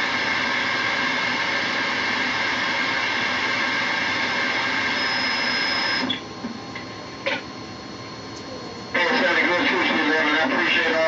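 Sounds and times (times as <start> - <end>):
radio static hiss: 8.1 - 11.0.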